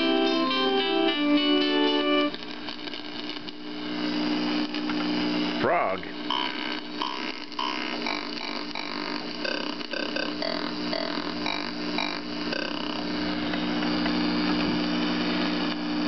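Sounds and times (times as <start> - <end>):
amplifier hum and noise: 0.0 - 16.0
croaky keyboard notes: 6.3 - 13.1.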